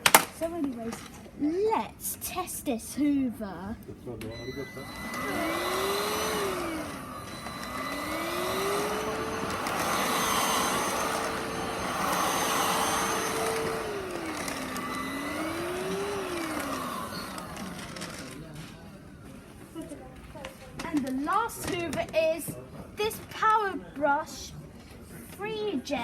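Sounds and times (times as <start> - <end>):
handheld vacuum cleaner motor whine: 4.3 - 18.4.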